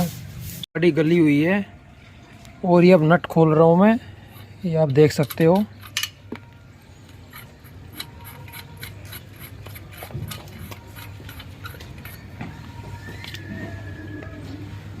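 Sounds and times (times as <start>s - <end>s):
wrench clicking on wheel nuts: 4.3s - 12.4s.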